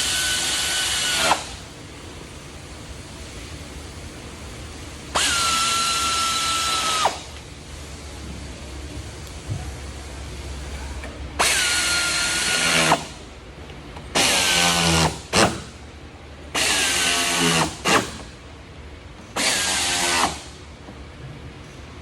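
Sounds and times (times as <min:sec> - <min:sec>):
power drill whine: 0:00.0 - 0:01.5, 0:05.2 - 0:07.3, 0:11.4 - 0:13.0, 0:19.4 - 0:20.5.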